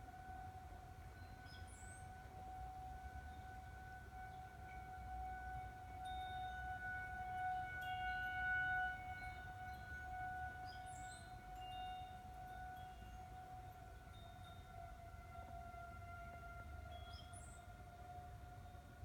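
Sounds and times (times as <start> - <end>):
warning siren wailing: 2.5 - 11.6, 14.7 - 16.9.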